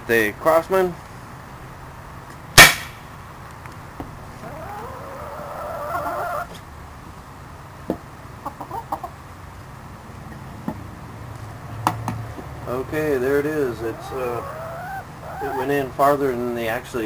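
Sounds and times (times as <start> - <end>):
air gun firing: 2.6 - 3.0
chicken calling: 4.4 - 6.7, 8.1 - 10.5, 12.6 - 16.8.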